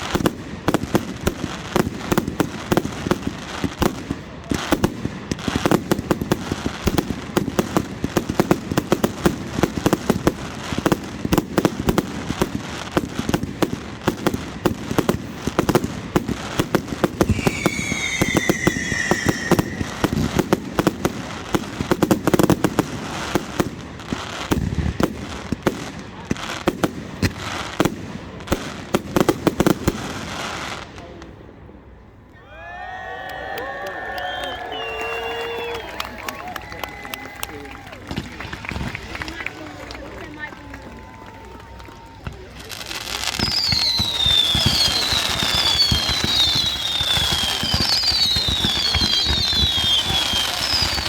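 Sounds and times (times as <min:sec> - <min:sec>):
whistling firework: 0:00.0 - 0:26.5, 0:32.4 - 0:51.0
fireworks crackling and banging: 0:00.0 - 0:32.2, 0:34.2 - 0:51.0
crowd murmuring: 0:33.6 - 0:46.0.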